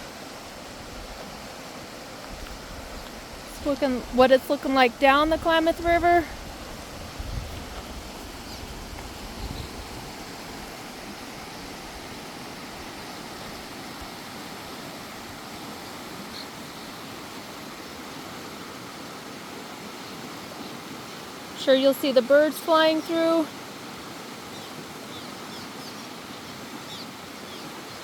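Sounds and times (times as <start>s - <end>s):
river rushing: 0.0s - 28.0s
wind buffeting microphone: 2.2s - 12.9s.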